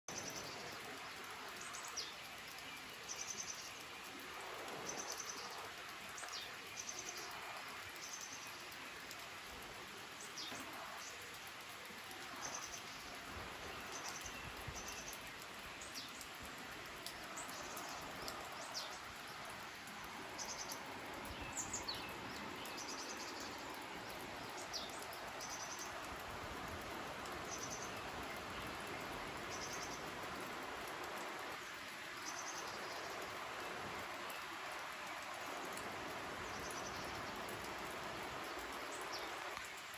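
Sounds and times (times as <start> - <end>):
small birds trilling and chirping: 0.1 - 39.9
stream rushing: 9.0 - 39.9.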